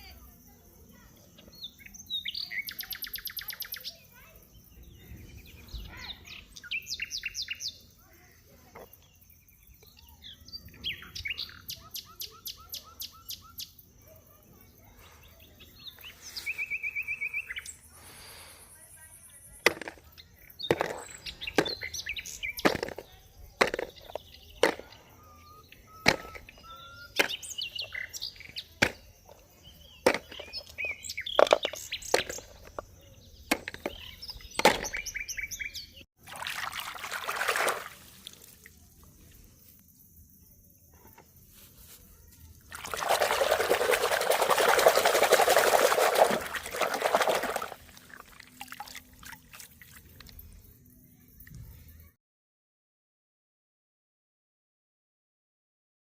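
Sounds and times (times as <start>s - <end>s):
bird chirps: 0.0s - 36.1s
plastic toys clattering: 19.6s - 25.1s, 26.0s - 26.6s, 30.0s - 35.0s
running water: 36.2s - 38.9s, 42.7s - 50.4s
water pouring and splashing: 36.2s - 39.0s, 42.6s - 50.4s.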